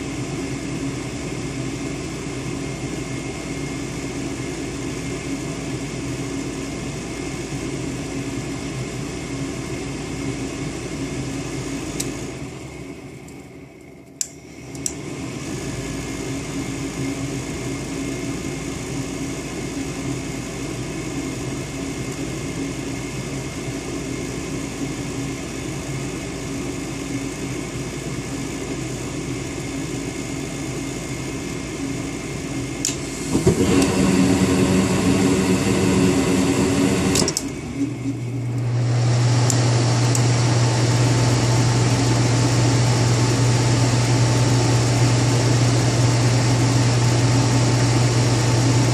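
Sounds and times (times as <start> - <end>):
furnace humming: 0.0 - 48.9
click: 14.0 - 15.0, 39.4 - 40.3
deep loud hum: 27.6 - 48.9.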